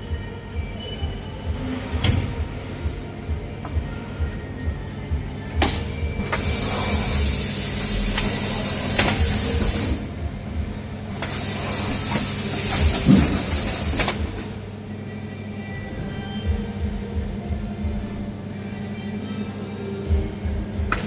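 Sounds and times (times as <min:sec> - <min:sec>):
steady low hum: 0:00.0 - 0:21.0
compressed air hissing: 0:06.2 - 0:10.1, 0:11.0 - 0:14.6.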